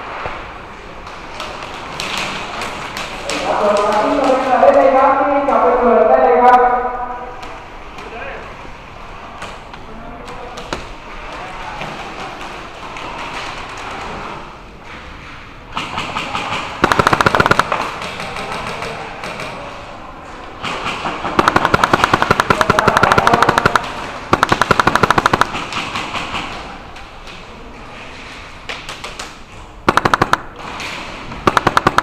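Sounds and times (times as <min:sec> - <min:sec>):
airsoft guns firing bursts: 0:15.8 - 0:19.6, 0:20.6 - 0:26.6, 0:29.9 - 0:30.7, 0:31.4 - 0:32.0.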